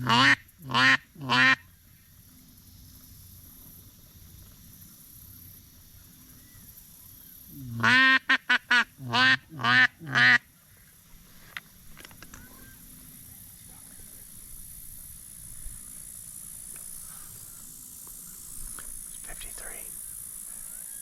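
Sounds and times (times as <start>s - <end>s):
loud duck quacks: 0.0s - 1.6s, 7.7s - 10.5s.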